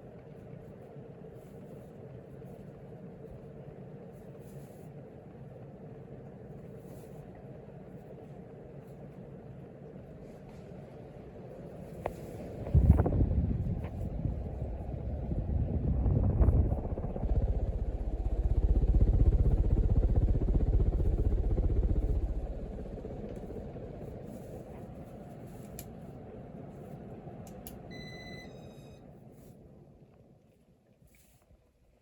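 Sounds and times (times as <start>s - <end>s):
ceiling fan rumble: 0.0s - 32.0s
two-tone electronic beep: 27.9s - 29.0s.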